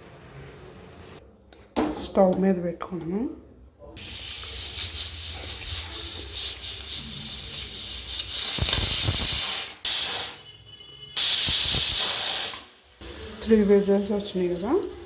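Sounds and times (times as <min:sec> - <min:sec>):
pressure cooker whistling: 0:04.0 - 0:15.0.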